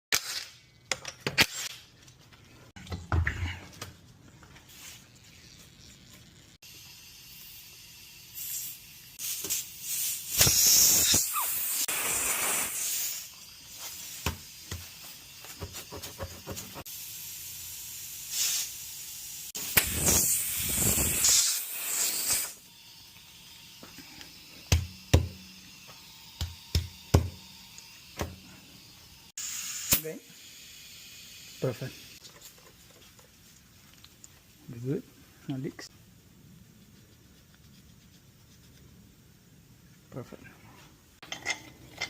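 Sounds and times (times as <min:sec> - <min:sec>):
air hissing: 0:06.6 - 0:32.2.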